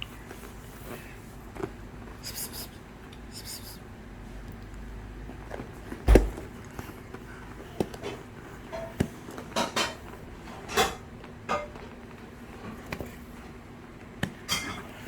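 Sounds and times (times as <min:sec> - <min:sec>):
loud thump: 0:06.1 - 0:06.5.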